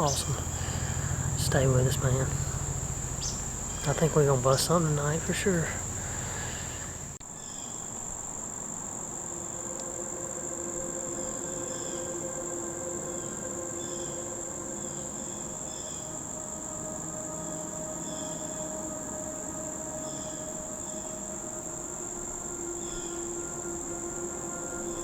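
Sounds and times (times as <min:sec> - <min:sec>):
faint low hum: 0:00.0 - 0:07.2
insect chirps: 0:00.0 - 0:25.0
insects trilling: 0:00.0 - 0:25.0.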